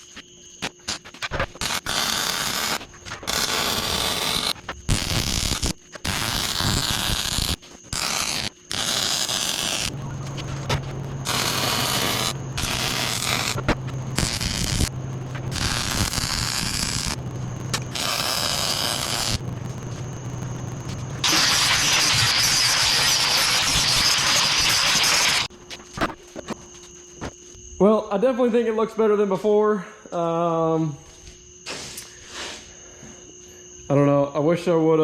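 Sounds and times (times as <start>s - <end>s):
welding arc crackling: 0.6s - 25.5s
low hum: 9.9s - 24.7s.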